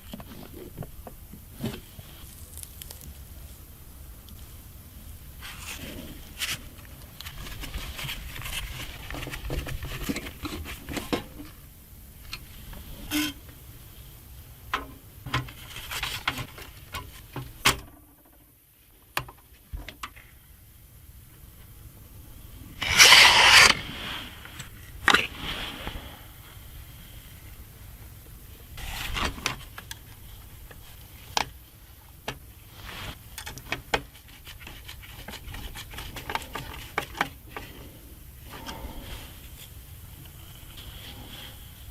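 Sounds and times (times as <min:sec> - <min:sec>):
clicks and scrapes of handling: 0:05.4 - 0:11.6, 0:15.3 - 0:18.4, 0:22.8 - 0:25.6, 0:32.3 - 0:37.9.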